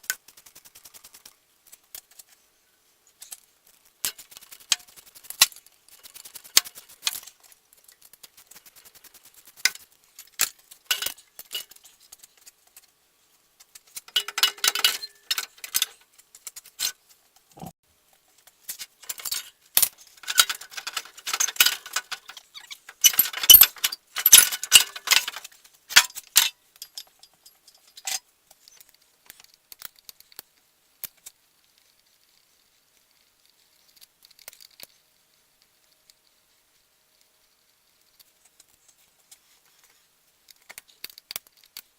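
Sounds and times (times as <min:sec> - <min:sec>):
metal tools clinking and rattling: 0:10.2 - 0:12.0, 0:13.9 - 0:16.0, 0:19.0 - 0:28.3.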